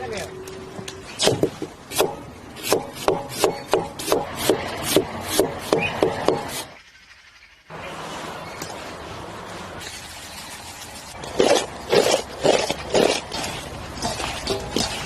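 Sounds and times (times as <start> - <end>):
rasping scraping strokes: 8.0 - 15.0.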